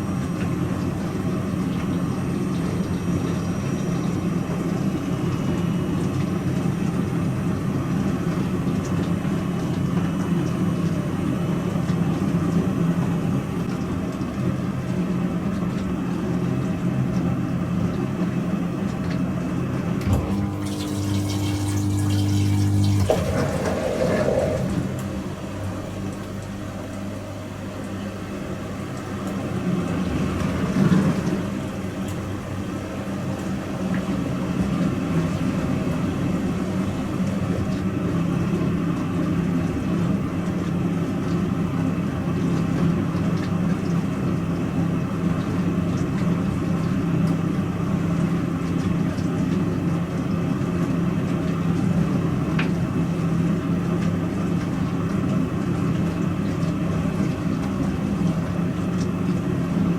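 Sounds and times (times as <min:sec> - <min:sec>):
dishwasher pump hum: 0:00.0 - 0:59.9
water swishing: 0:20.1 - 0:26.1.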